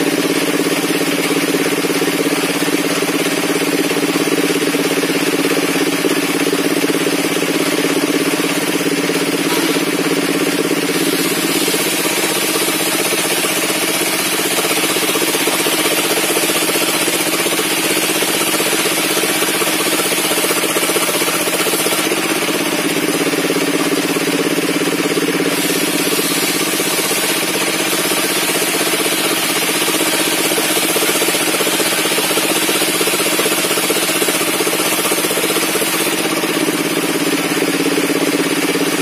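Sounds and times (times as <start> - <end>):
engine mechanical drone: 0.0 - 39.0
circular saw high-pitched whine: 9.4 - 16.8.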